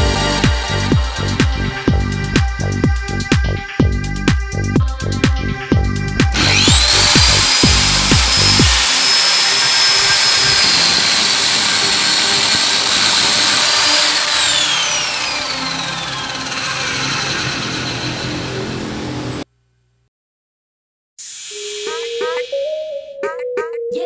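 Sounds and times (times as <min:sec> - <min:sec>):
saw motor whining: 0:06.3 - 0:19.4.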